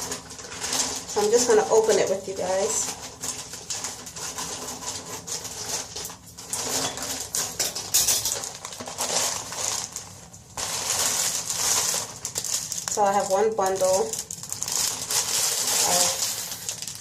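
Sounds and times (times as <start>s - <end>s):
plastic packaging crinkling: 0.0s - 17.0s.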